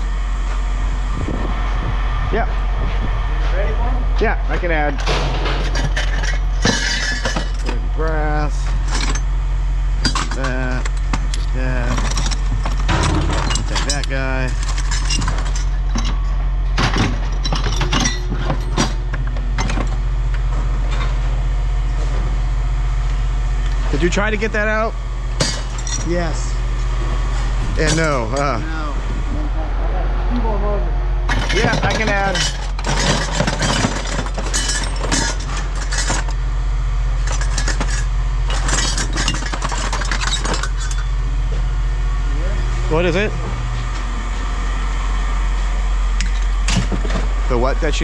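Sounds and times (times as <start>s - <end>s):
engine droning: 0.0s - 48.0s
scrap metal clanking: 4.9s - 7.9s, 8.5s - 9.3s, 10.0s - 21.3s, 25.4s - 26.6s, 31.3s - 36.4s, 37.2s - 41.1s.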